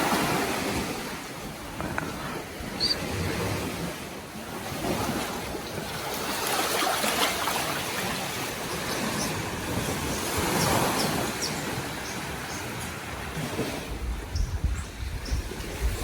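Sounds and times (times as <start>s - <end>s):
sea surf washing onto beach: 0.0s - 16.0s
high chirp: 2.8s - 3.0s.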